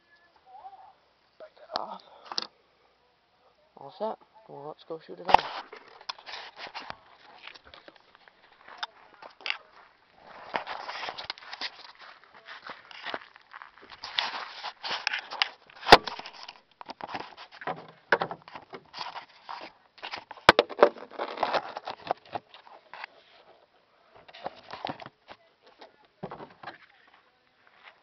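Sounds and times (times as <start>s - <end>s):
rustling handling noise: 5.1s - 28.0s
footsteps: 5.3s - 22.0s.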